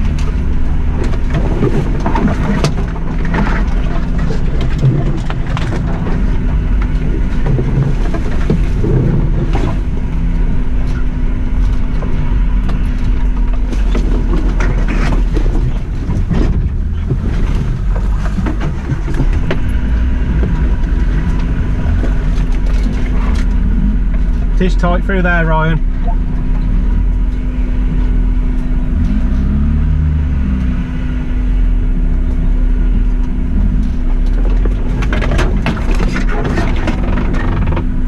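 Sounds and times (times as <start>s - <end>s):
car jolting with knocks and clatters: 0.0s - 25.0s, 33.4s - 38.0s
car engine droning: 0.0s - 38.0s.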